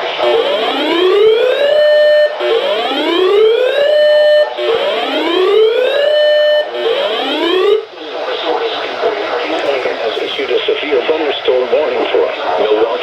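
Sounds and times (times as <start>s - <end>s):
electronic whoop alarm: 0.0s - 7.9s.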